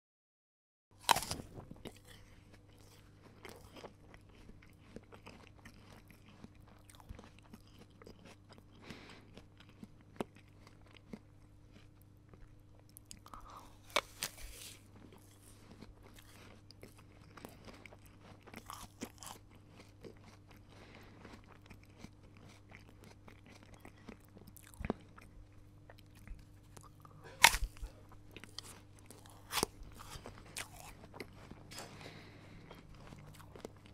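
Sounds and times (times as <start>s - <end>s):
chewing crunches: 1.0s - 33.9s
crunching apple bite: 1.0s - 33.9s.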